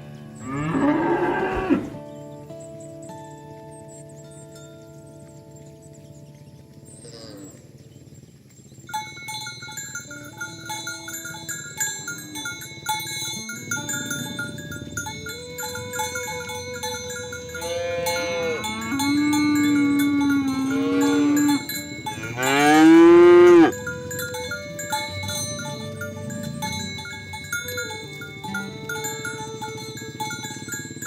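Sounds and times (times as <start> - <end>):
cowbells clanking: 0.0 - 31.0
cattle mooing: 0.4 - 2.0, 13.7 - 24.0.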